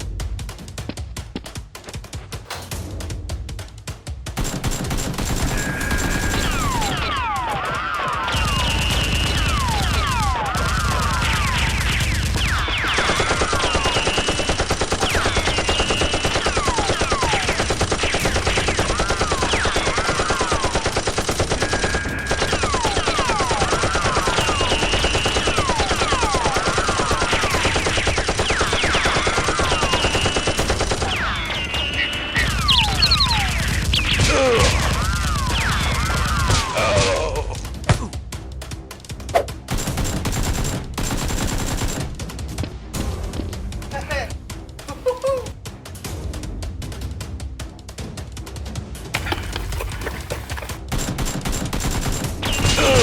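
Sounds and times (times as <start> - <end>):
rapid automatic gunfire: 4.3 - 36.8, 39.7 - 42.3, 49.2 - 53.0
falling whistles: 8.3 - 9.7, 31.2 - 34.2.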